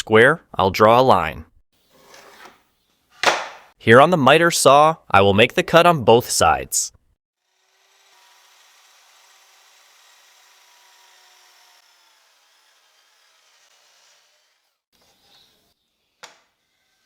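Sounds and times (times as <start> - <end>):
miter saw running: 7.4 - 14.8.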